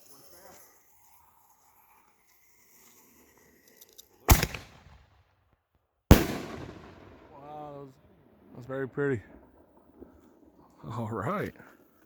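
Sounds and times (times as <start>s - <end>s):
firework bangs with echo: 4.3s - 5.1s, 6.1s - 7.5s.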